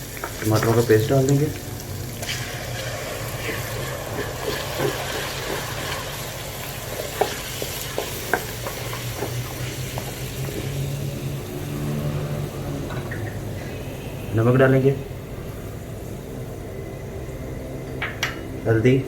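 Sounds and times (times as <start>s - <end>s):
paste sizzling in hot oil: 0.0s - 14.4s.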